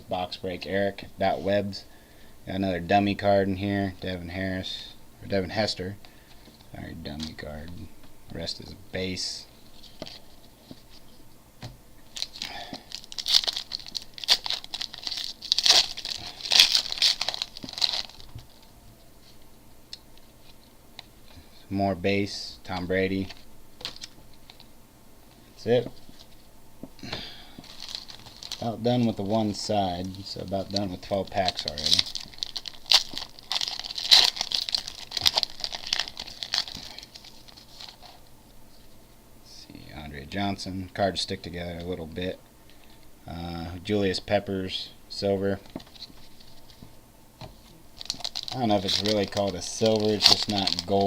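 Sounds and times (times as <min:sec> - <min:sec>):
foil wrapper crinkling and tearing: 0:12.1 - 0:18.7, 0:27.0 - 0:38.3, 0:45.4 - 0:46.9, 0:47.6 - 0:51.0.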